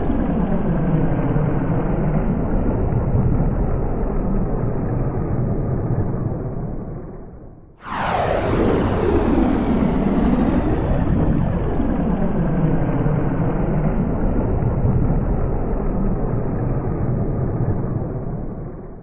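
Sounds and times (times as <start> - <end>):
synthesized spacecraft rumbling drone: 7.8 - 19.0.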